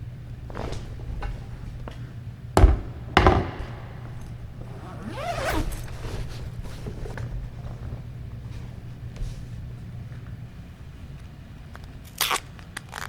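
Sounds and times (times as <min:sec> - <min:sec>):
court shoes squeaking on floor: 0:00.4 - 0:07.7
squash ball smacked: 0:02.6 - 0:04.7.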